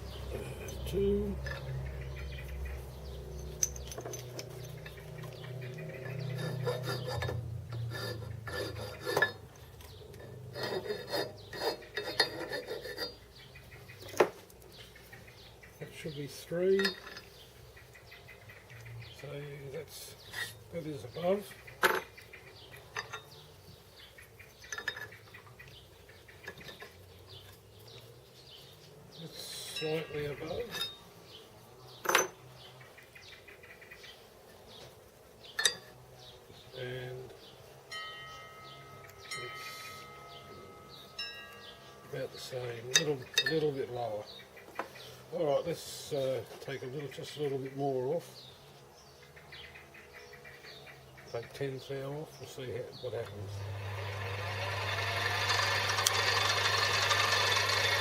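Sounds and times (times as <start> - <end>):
hand file rasping on metal: 5.8 - 9.6, 10.2 - 13.5.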